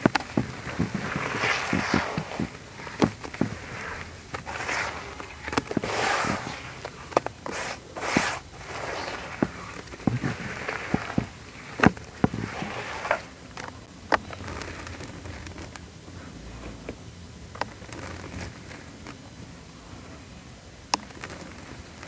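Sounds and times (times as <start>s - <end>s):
hissy washes of crumbling: 0.0s - 13.8s
concrete crackling in foamy water: 0.0s - 15.8s.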